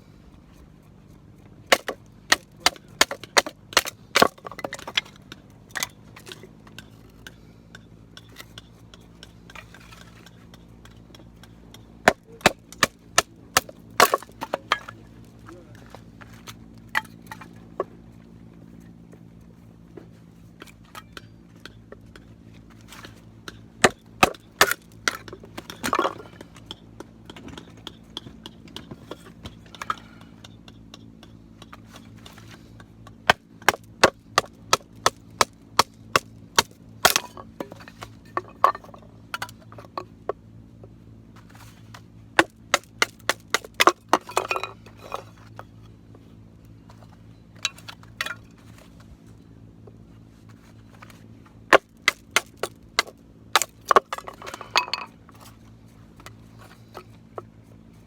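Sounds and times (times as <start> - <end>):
firewood splitting rasps: 1.2 - 18.1, 20.5 - 40.4, 41.3 - 49.4, 50.4 - 58.0.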